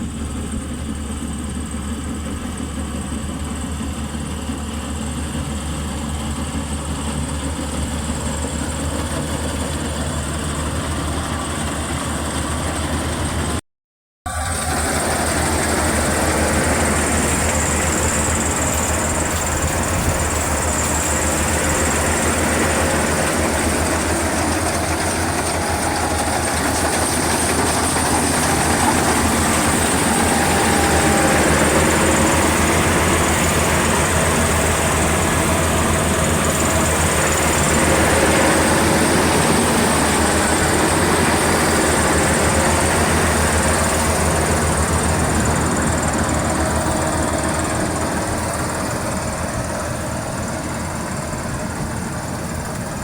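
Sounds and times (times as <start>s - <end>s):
combine harvester engine hum: 0.0s - 13.6s, 14.3s - 53.0s
threshing machinery rattle: 14.7s - 49.7s
faint high whine: 15.5s - 52.3s.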